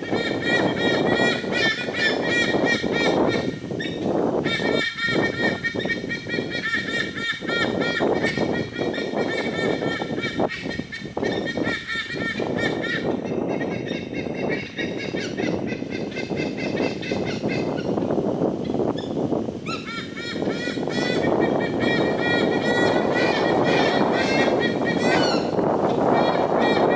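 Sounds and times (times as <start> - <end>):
steady rushing noise: 0.0 - 26.9
eagles honking calls: 19.6 - 26.9.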